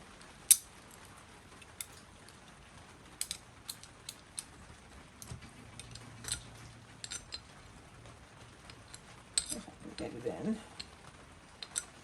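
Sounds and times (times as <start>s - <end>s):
small metal clicks and taps: 0.2s - 2.4s, 3.2s - 4.6s, 5.2s - 7.6s, 8.6s - 11.0s, 11.6s - 12.0s.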